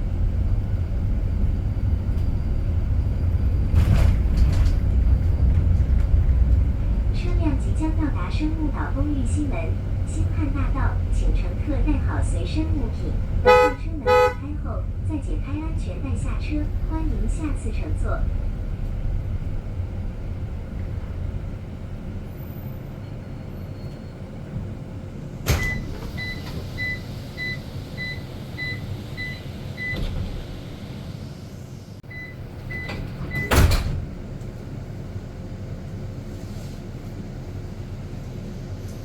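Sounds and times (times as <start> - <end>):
low bus hum: 0.0 - 39.0
door clunk: 32.8 - 34.2
door shutting thump: 33.0 - 34.1.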